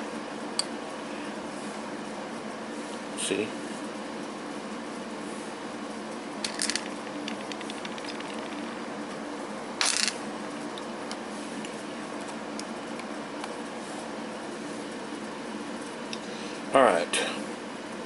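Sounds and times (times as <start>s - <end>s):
steady background hum: 0.0s - 18.0s.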